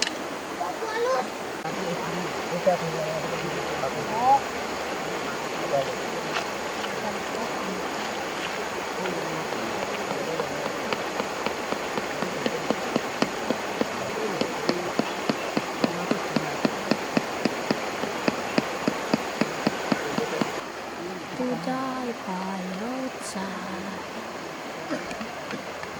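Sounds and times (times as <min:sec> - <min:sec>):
stream rushing: 0:00.0 - 0:25.9
rapid sharp knocks: 0:09.8 - 0:20.6.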